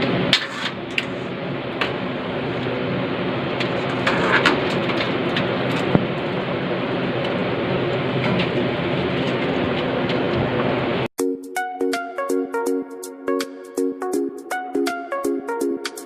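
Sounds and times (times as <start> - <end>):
low hum: 0.0 - 11.1
steady rushing noise: 0.0 - 11.1.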